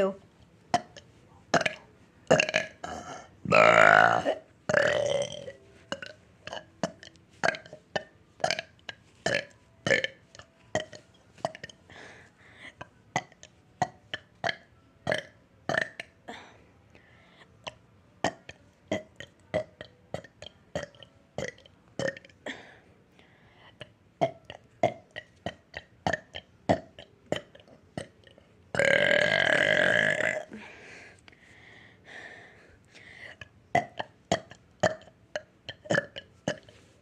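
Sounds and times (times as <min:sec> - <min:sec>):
person burping: 0:00.7 - 0:10.2, 0:10.8 - 0:11.8, 0:13.2 - 0:16.4, 0:18.2 - 0:22.6, 0:23.8 - 0:30.6, 0:33.8 - 0:36.8.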